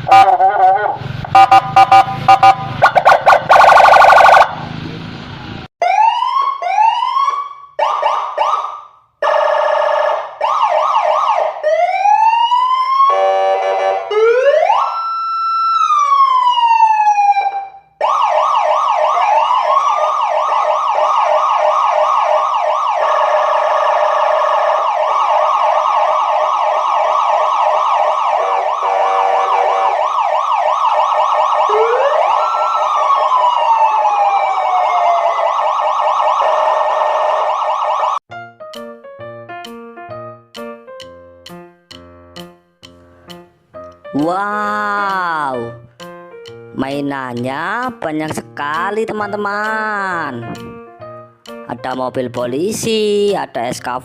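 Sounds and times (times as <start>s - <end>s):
fast yelping sirens: 0.0s - 4.7s, 5.8s - 38.2s
pulsing horn-like siren tones: 0.0s - 4.7s, 12.9s - 15.0s, 18.4s - 38.2s
wailing siren: 0.0s - 4.8s, 5.8s - 38.2s.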